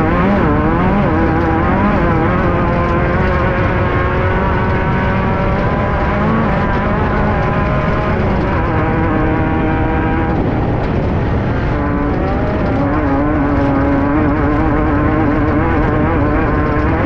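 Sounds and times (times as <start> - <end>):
heavy rattle and rumble: 0.0 - 17.0
race car engine running hard: 0.0 - 17.0.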